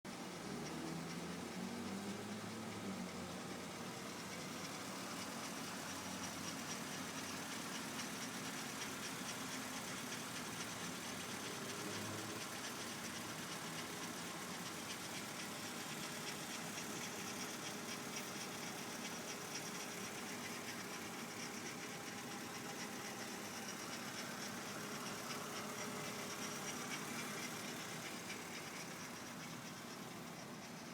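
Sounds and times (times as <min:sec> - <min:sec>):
car engine idling: 0:00.1 - 0:30.9
rotational grinding noise: 0:20.2 - 0:30.9.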